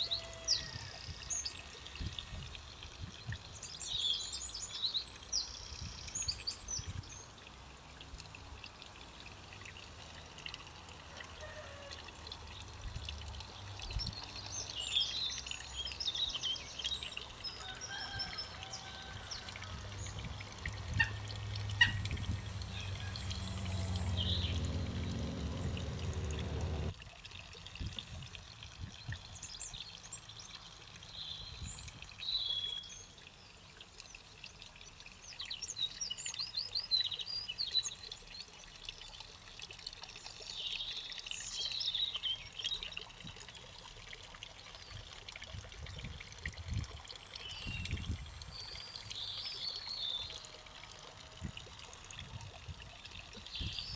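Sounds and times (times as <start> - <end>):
birds singing and chirping: 18.0 - 26.9
low engine-like hum: 19.4 - 27.0.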